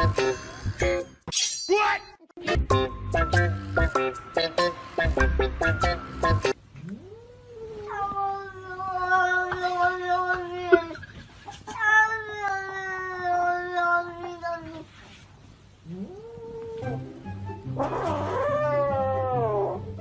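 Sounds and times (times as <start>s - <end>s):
music: 0.0s - 1.2s, 2.4s - 6.6s, 16.8s - 20.0s
cat yowling: 17.8s - 19.9s.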